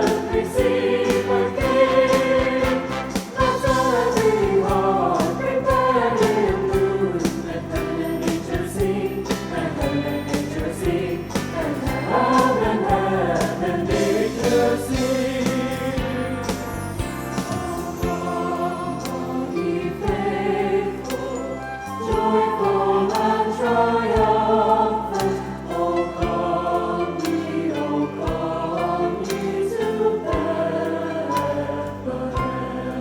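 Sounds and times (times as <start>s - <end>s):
choir singing with accompaniment: 0.0s - 33.0s
sharp percussive strikes: 0.1s - 7.6s.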